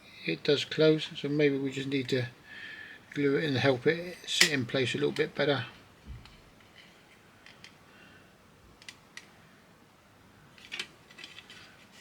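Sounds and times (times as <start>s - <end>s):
plastic parts clicking together: 6.2s - 7.8s, 8.8s - 9.4s, 10.6s - 11.7s.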